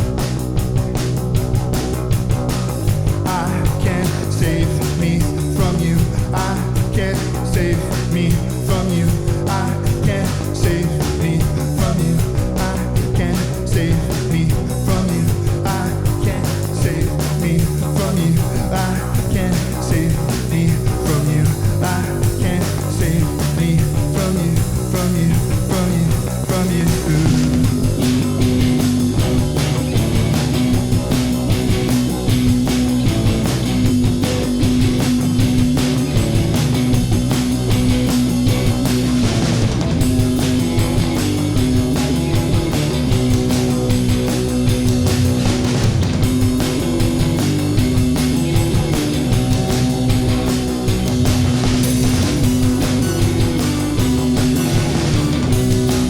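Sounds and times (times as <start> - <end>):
loud rock music: 0.0 - 56.0.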